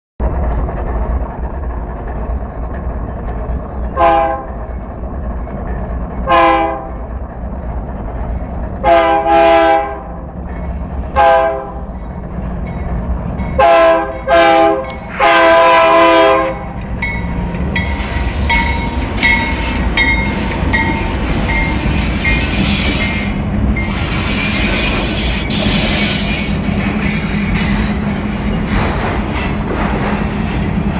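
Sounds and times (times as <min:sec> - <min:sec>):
diesel engine rumble: 0:00.2 - 0:30.9
train wheels clickety-clack: 0:00.2 - 0:30.9
locomotive air horn blasts: 0:04.0 - 0:04.5, 0:06.3 - 0:07.0, 0:08.8 - 0:10.1, 0:11.2 - 0:11.8, 0:13.6 - 0:16.8.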